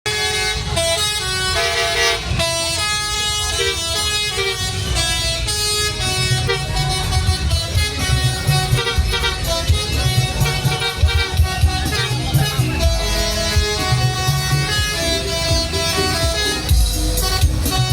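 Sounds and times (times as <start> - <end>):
multi-tone musical air horn: 0.0 - 17.9.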